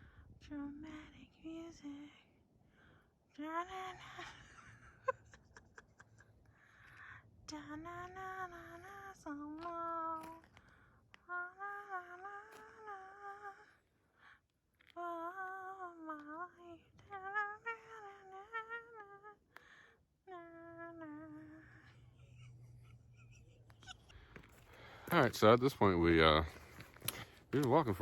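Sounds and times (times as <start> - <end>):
person humming a tune: 15.1 - 19.4, 20.3 - 22.1.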